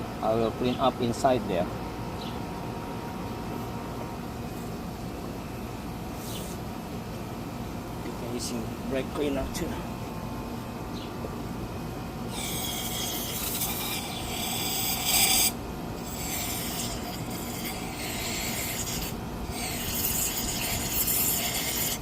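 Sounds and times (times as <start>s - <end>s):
scratchy rubbing and scraping: 12.4s - 22.0s.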